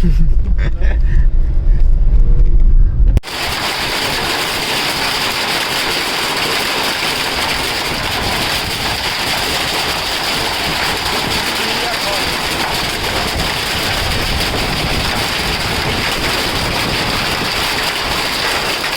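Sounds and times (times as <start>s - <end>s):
loud low rumble: 0.0s - 5.3s
rain and hail downpour: 3.2s - 18.9s.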